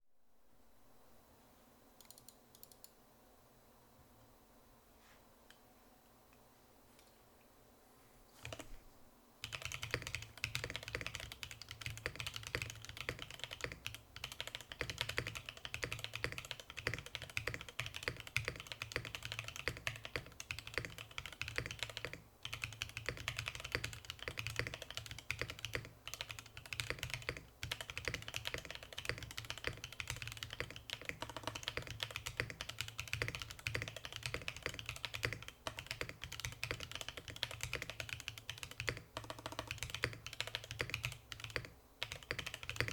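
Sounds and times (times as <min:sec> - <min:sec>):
fast mechanical keyboard typing: 0:08.4 - 0:08.7, 0:09.4 - 0:42.9.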